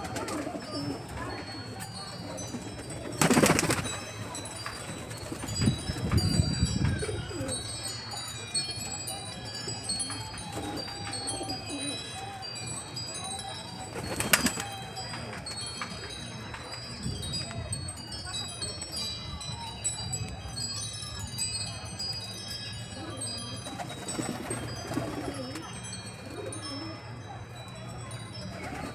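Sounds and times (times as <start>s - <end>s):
wind chimes tinkling: 0.0s - 28.9s
pigeons cooing: 10.4s - 12.4s.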